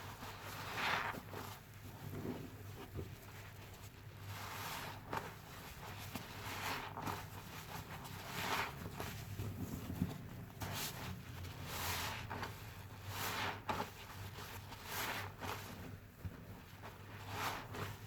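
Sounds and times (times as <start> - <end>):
wet sponge squishing: 0.0 - 18.0.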